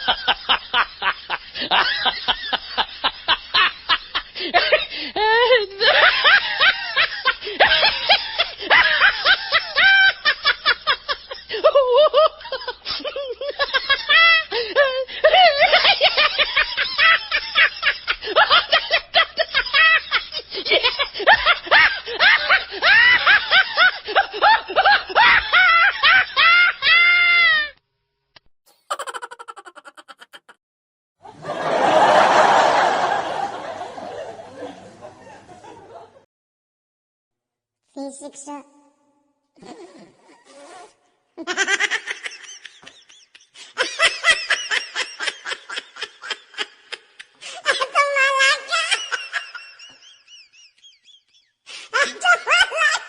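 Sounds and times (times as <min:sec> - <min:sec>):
high-pitched laughing: 0:04.6 - 0:23.6, 0:28.7 - 0:30.6, 0:41.4 - 0:50.6, 0:51.9 - 0:53.0
rapid chattering laugh: 0:28.7 - 0:30.6.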